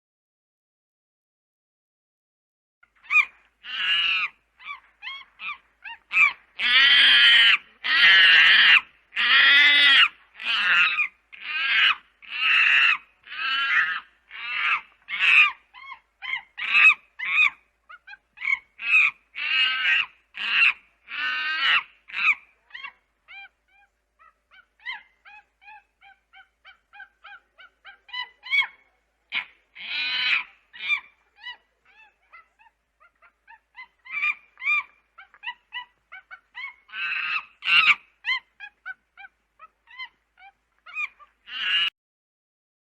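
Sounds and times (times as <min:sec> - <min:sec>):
monkey chattering: 0:03.0 - 0:41.9
monkey screeching calls: 0:03.0 - 0:41.9.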